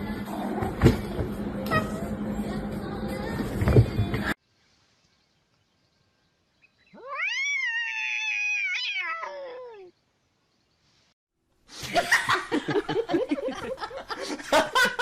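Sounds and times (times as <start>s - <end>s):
cat meowing: 7.0s - 9.9s.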